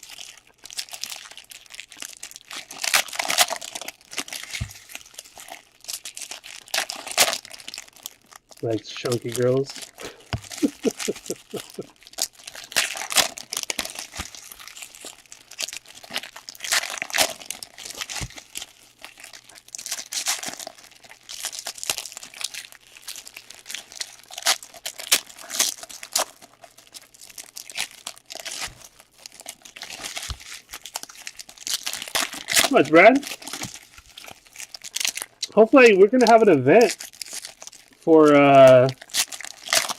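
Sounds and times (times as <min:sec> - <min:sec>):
foil wrappers crinkling and tearing: 0:00.0 - 0:39.9
cards being handled: 0:09.0 - 0:11.6.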